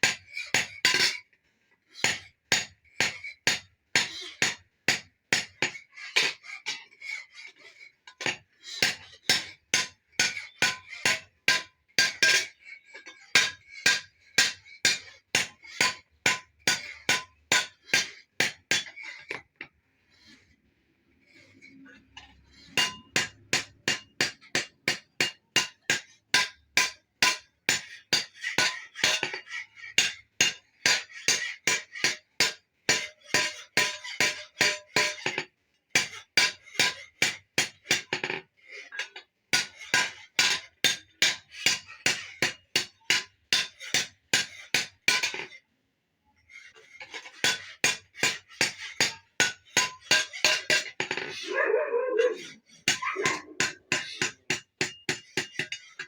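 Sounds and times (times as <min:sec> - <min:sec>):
hammer striking metal anvil: 0:22.8 - 0:28.3, 0:52.9 - 0:55.8.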